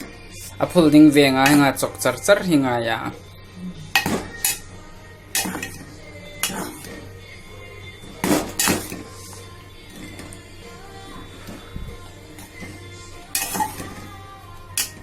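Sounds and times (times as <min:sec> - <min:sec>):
faint background music: 0:00.0 - 0:15.0
utensil clinking on a pot: 0:01.4 - 0:01.8, 0:04.0 - 0:04.7, 0:05.4 - 0:07.0, 0:08.2 - 0:09.1, 0:13.3 - 0:14.1, 0:14.7 - 0:15.0.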